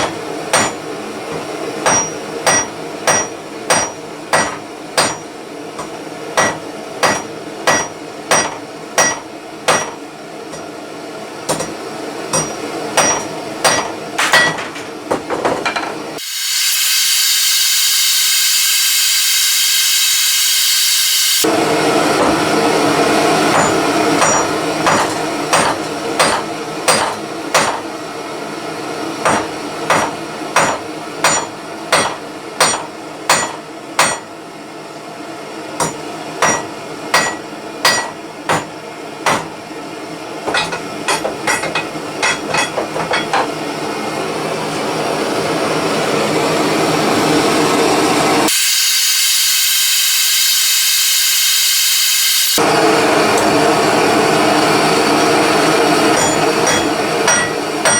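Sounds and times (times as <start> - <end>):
hammer striking metal bar: 0.0 - 0.8, 1.8 - 10.7, 11.5 - 14.8, 23.5 - 27.8, 29.2 - 34.2, 35.8 - 39.5, 40.5 - 43.5, 56.2 - 57.9
blow lamp hissing: 16.2 - 21.5, 48.5 - 52.9
high hiss: 16.2 - 21.5, 48.5 - 52.6.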